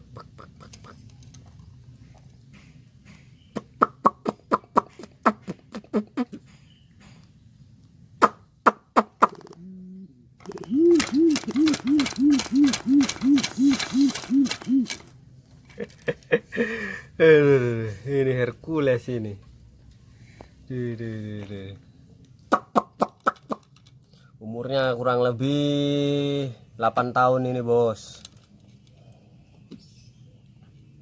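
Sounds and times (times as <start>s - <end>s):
pigeon deep hoots: 3.5s - 6.4s, 8.2s - 15.1s
sharp clicks: 10.4s - 15.1s.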